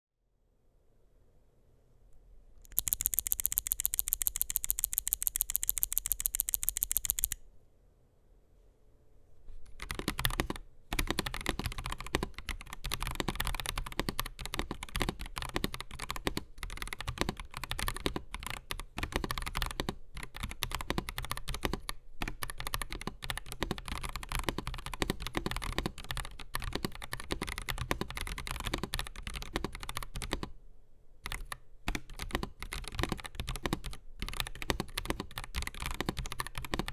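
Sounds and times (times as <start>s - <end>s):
fast even sharp clicks: 2.6s - 7.4s
mechanical keyboard typing: 2.7s - 7.4s, 9.7s - 30.5s, 31.3s - 36.9s.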